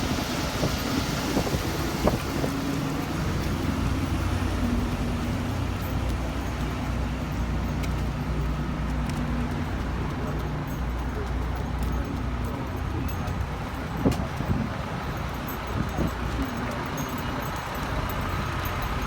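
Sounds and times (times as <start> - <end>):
wind rumble on microphone: 0.0 - 6.6, 12.0 - 18.4
vehicle engines humming: 0.0 - 19.0.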